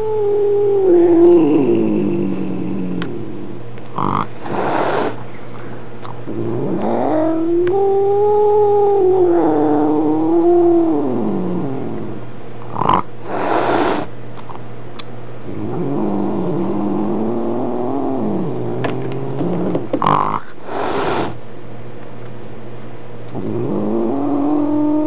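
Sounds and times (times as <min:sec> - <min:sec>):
cat yowling: 0:00.0 - 0:03.3, 0:06.4 - 0:12.0.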